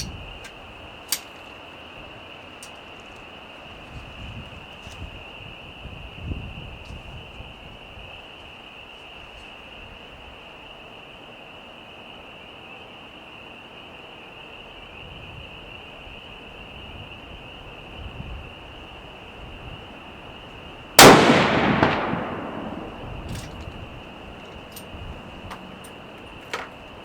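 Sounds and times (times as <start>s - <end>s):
faint low rumbles: 16.5s - 27.0s.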